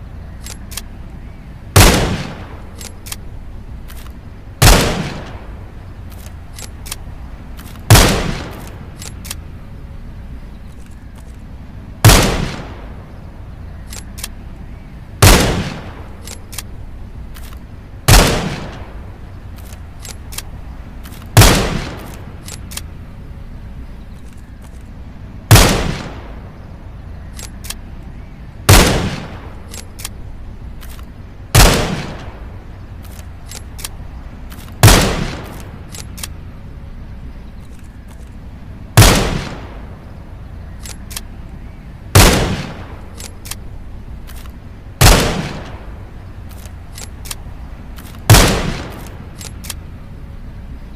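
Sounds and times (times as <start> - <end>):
steady low hum: 0.0 - 50.9
faint clicks: 0.3 - 1.2, 2.7 - 4.3, 6.0 - 9.6, 10.6 - 11.6, 13.7 - 14.7, 16.2 - 17.8, 18.5 - 23.1, 23.8 - 25.2, 27.1 - 28.2, 29.5 - 31.4, 32.1 - 36.6, 37.4 - 38.8, 40.4 - 41.6, 42.6 - 44.8, 45.5 - 50.2
rifle shots: 1.8 - 3.3, 3.9 - 9.5, 12.0 - 13.0, 15.2 - 16.7, 17.4 - 23.0, 25.5 - 26.5, 28.7 - 36.4, 39.0 - 40.1, 42.1 - 49.9.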